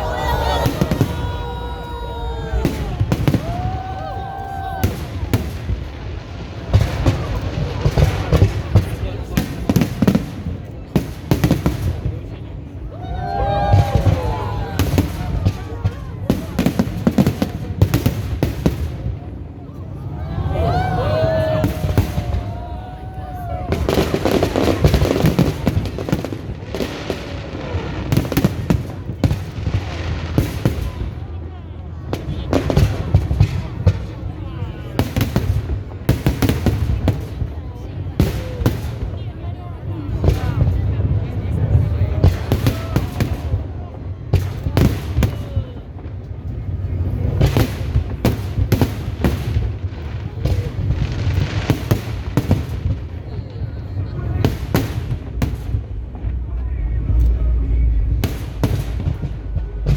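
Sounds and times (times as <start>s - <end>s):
fireworks bangs and crackling: 0.0s - 59.9s
heavy fireworks booms: 0.0s - 59.9s
steady low rumble: 53.7s - 59.9s.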